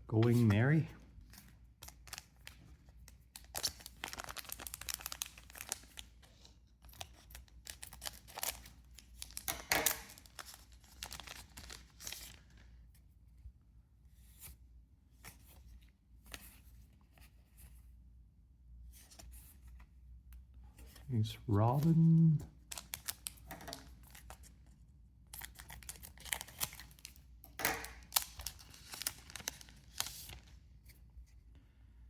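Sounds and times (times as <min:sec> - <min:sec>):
foil wrapper tearing and crinkling: 0:03.4 - 0:06.1, 0:06.9 - 0:12.5, 0:22.6 - 0:24.4, 0:25.4 - 0:27.1, 0:27.8 - 0:30.4
cards rustling: 0:06.9 - 0:12.7, 0:20.8 - 0:24.5, 0:25.4 - 0:30.9.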